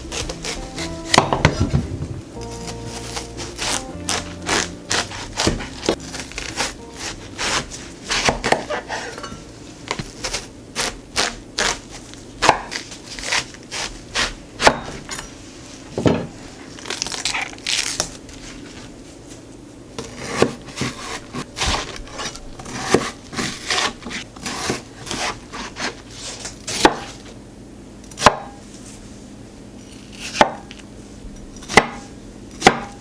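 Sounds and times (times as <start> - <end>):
knife swishing slices: 0.0 - 11.9
knife chopping watermelon: 0.0 - 15.1, 20.0 - 27.2, 28.1 - 28.6, 30.1 - 30.8, 31.6 - 33.0.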